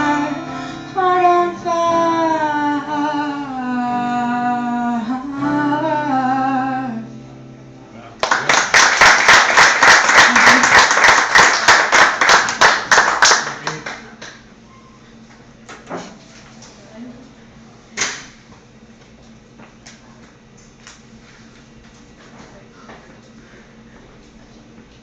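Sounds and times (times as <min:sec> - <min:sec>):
audience applauding: 0:08.2 - 0:14.3.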